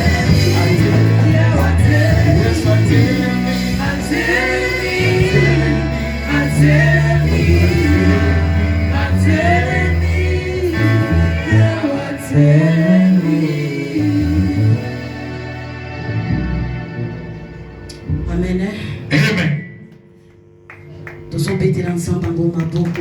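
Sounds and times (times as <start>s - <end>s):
voices singing together: 0.0s - 15.8s
band playing: 0.0s - 19.7s
bass line: 0.0s - 19.9s.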